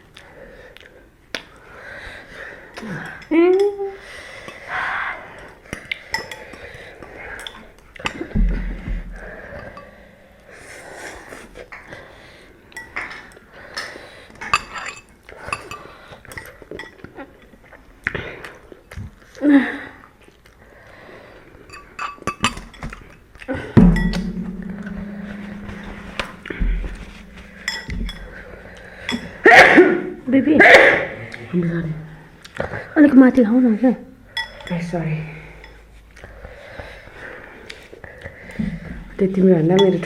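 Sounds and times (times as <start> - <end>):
utensils clinking against bowls: 2.7 - 4.7, 6.0 - 8.3, 12.8 - 17.6, 21.7 - 29.7, 34.4 - 34.9, 39.7 - 40.0.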